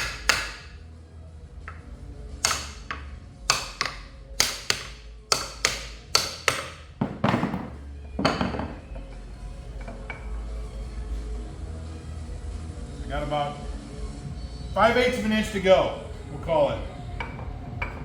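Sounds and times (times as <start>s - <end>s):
hammer striking metal: 0.0s - 0.8s, 1.7s - 9.2s.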